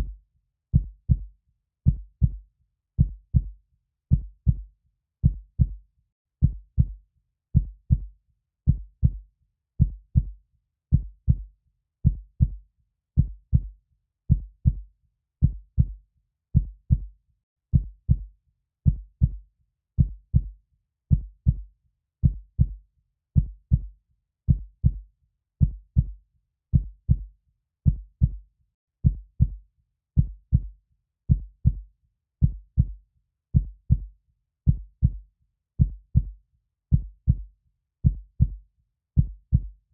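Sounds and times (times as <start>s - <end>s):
heartbeat thumps: 1.9s - 2.4s, 3.0s - 3.5s, 4.1s - 4.6s, 5.2s - 5.8s, 6.4s - 7.0s, 7.6s - 8.1s, 8.7s - 9.2s, 9.8s - 10.3s, 10.9s - 11.4s, 13.2s - 13.7s, 14.3s - 14.8s, 15.4s - 16.0s, 16.6s - 17.1s, 18.9s - 19.4s, 20.0s - 20.5s, 21.1s - 21.6s, 22.2s - 22.8s, 23.4s - 23.9s, 24.5s - 25.0s, 25.6s - 26.2s, 26.8s - 27.3s, 27.9s - 28.4s, 29.0s - 29.6s, 30.2s - 30.7s, 31.3s - 31.8s, 32.4s - 33.0s, 33.6s - 34.1s, 34.7s - 35.2s, 35.8s - 38.6s, 39.2s - 39.7s.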